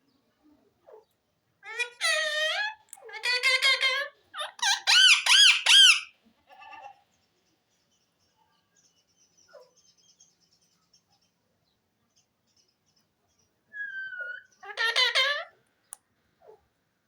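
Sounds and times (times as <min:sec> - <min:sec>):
parrot squeaky calls: 0:01.6 - 0:06.1, 0:13.7 - 0:15.6.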